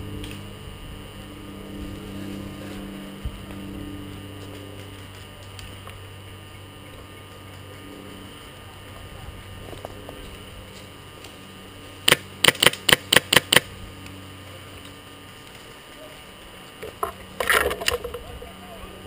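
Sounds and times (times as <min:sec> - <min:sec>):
steady low hum: 0:00.0 - 0:19.0
airsoft rifle shots: 0:12.0 - 0:13.7.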